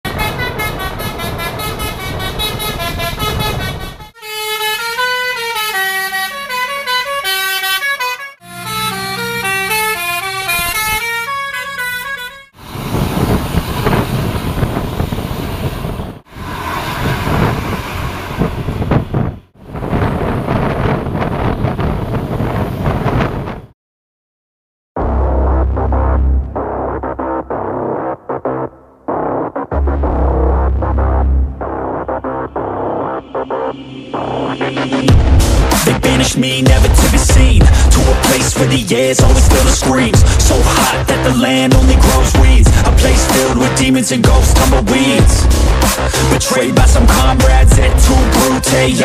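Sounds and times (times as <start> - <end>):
loud rushing bus noise: 0.0 - 23.7, 25.3 - 49.0
musical air horn tune: 0.1 - 12.6
bus engine running: 0.1 - 23.7, 29.8 - 49.0.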